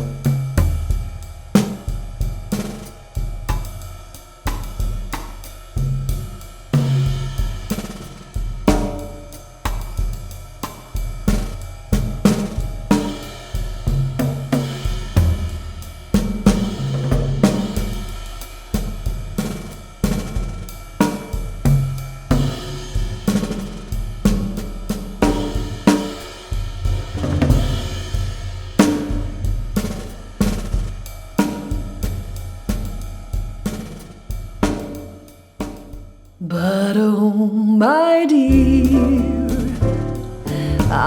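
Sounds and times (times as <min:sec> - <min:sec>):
drum kit: 0:00.0 - 0:36.4, 0:38.5 - 0:41.0
low bass notes: 0:38.5 - 0:41.0.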